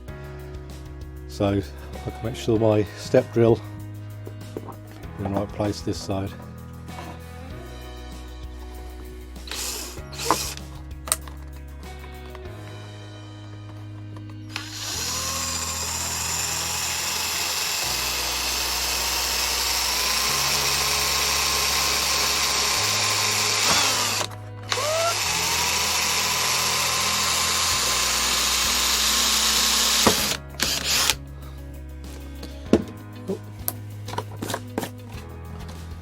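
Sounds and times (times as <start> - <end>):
electric drill whining: 9.4 - 11.4, 14.4 - 31.2.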